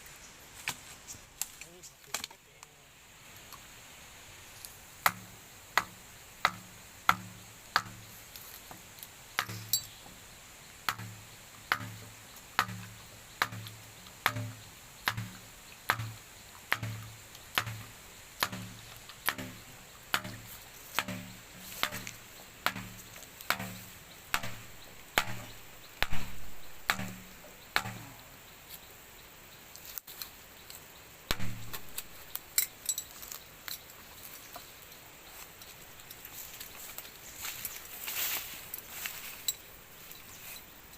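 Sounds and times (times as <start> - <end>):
hand tool chopping blows: 5.0 - 8.1, 10.9 - 12.0, 12.6 - 28.2, 31.3 - 32.2.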